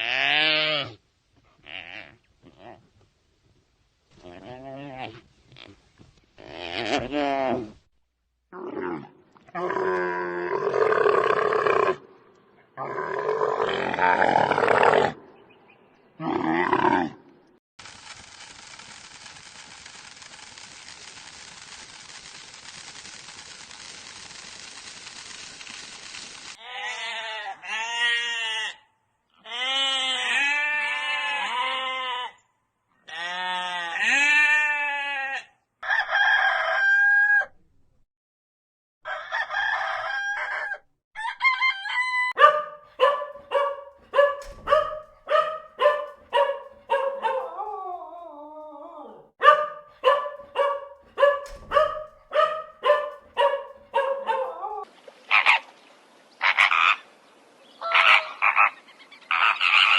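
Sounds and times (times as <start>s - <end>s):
hiss: 17.8s - 26.6s
rooster crowing: 35.8s - 37.5s, 39.0s - 48.0s, 49.4s - 54.8s.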